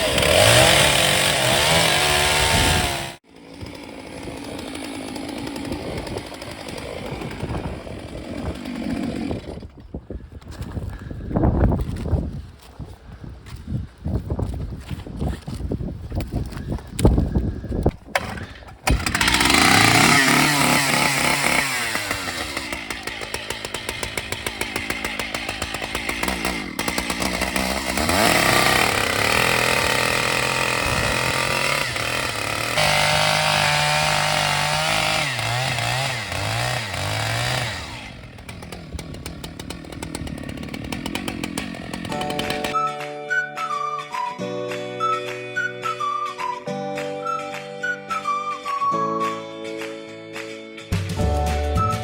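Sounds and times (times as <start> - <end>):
chainsaw revving: 0.0 - 9.7, 18.2 - 42.8.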